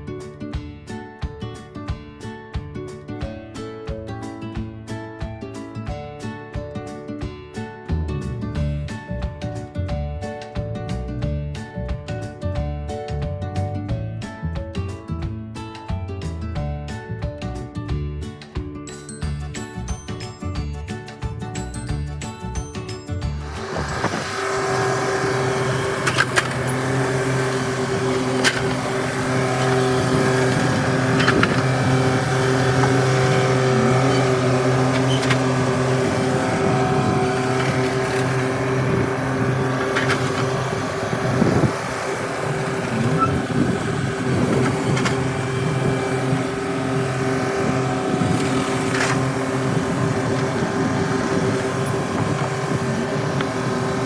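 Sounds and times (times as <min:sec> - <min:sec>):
engine running steadily: 0:19.2 - 0:54.0.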